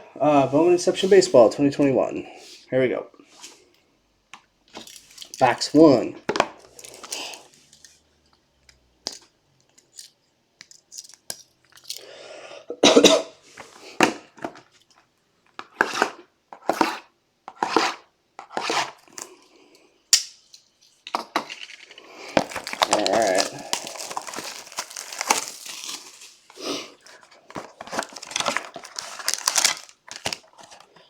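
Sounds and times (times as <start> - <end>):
plastic wrapping crinkling: 4.7 - 8.0, 20.7 - 31.0
shrink wrap and cardboard tearing: 21.5 - 30.9.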